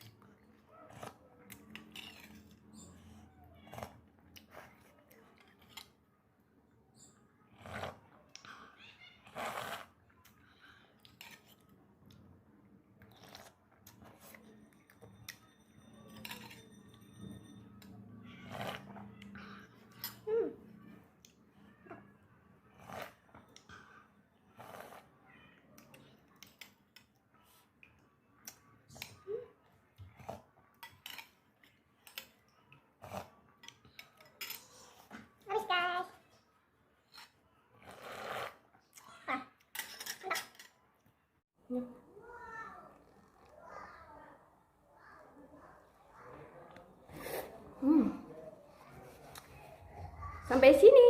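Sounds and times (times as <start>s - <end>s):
cutlery clinking against a bowl: 1.4s - 2.9s, 13.9s - 19.1s, 19.8s - 20.3s, 25.8s - 27.2s, 30.8s - 32.5s, 33.6s - 35.2s, 39.6s - 40.8s
person chewing noodle soup: 12.9s - 15.3s.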